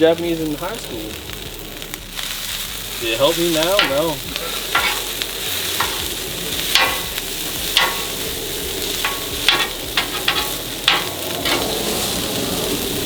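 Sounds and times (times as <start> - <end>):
food sizzling on griddle: 0.0 - 13.0
metal spatula scraping griddle: 3.2 - 13.0.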